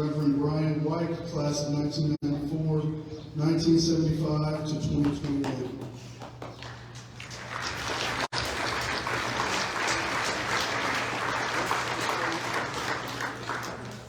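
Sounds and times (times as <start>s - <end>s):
audience applauding: 5.4s - 14.0s.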